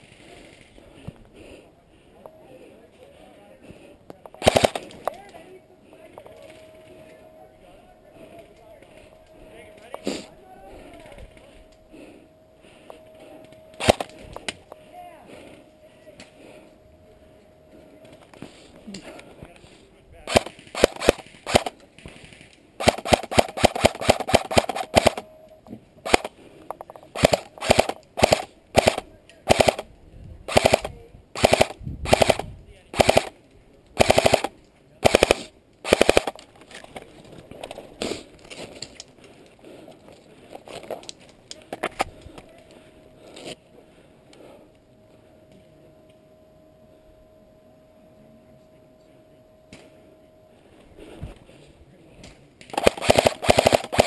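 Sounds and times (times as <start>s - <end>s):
airsoft rifles firing bursts: 4.4s - 5.3s, 13.7s - 14.5s, 20.2s - 25.2s, 26.0s - 26.4s, 27.1s - 29.9s, 30.5s - 33.4s, 34.0s - 36.4s, 52.7s - 54.0s.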